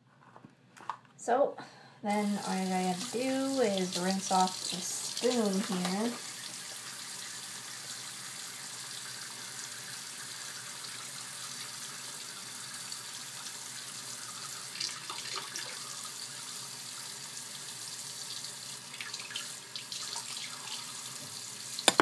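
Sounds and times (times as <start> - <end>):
tap running into sink: 21.2 - 22.0.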